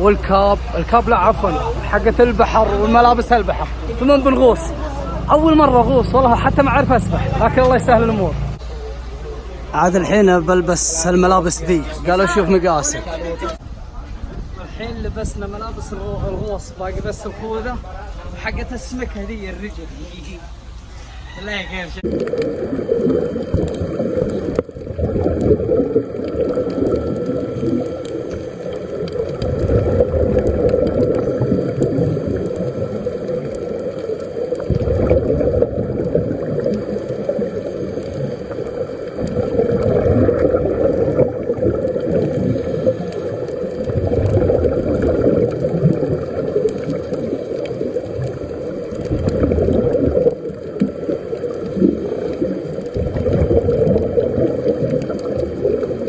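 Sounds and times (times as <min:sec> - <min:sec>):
low muffled underwater sound: 0:00.0 - 0:56.0
air bubbling underwater: 0:22.0 - 0:56.0.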